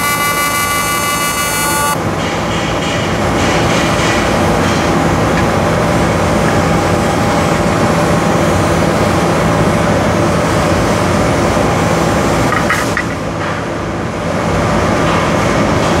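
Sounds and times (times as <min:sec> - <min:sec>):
welding arc buzzing: 0:00.0 - 0:02.0.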